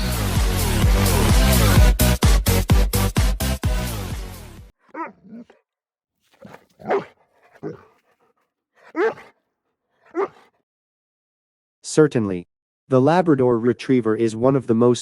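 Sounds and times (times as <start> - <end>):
dog barking: 4.9 - 5.6, 6.3 - 9.4, 10.0 - 10.5.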